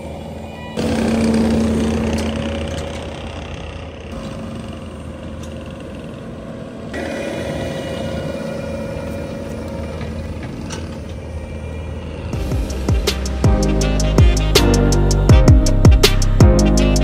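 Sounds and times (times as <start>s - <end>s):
diesel loader engine running: 0.8s - 17.0s.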